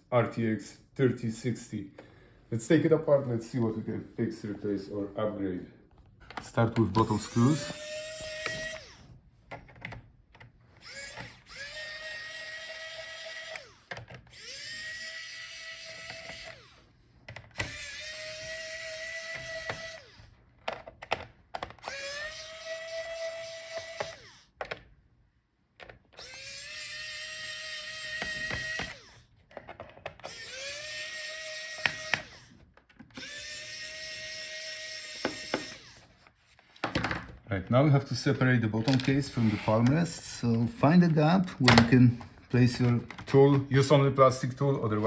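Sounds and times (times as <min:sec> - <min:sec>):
screwdriver clicking: 0:06.7 - 0:24.8, 0:25.8 - 0:36.1
electric screwdriver motor whining: 0:06.8 - 0:09.2, 0:10.8 - 0:20.3, 0:21.6 - 0:24.6, 0:26.1 - 0:29.3, 0:30.1 - 0:36.3.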